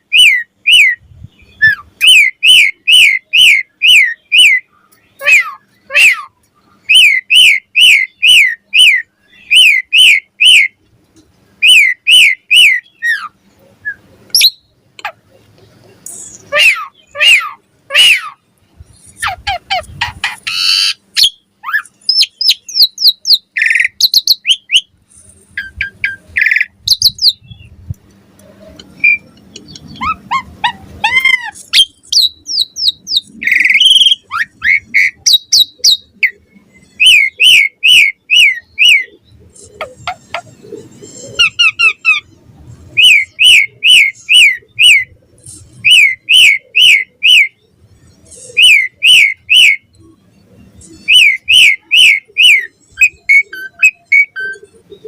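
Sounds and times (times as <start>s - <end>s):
starling singing: 0.0s - 10.8s, 11.6s - 27.8s, 28.4s - 55.0s.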